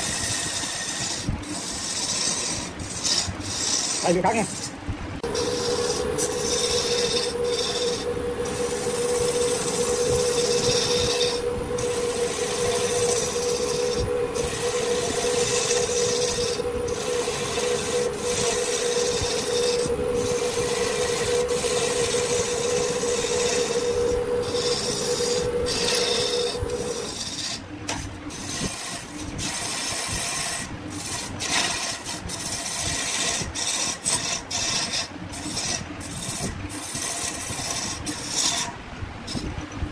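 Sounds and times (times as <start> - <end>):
tool scraping spinning wood: 0.0 - 39.5
wood lathe humming: 5.2 - 27.6.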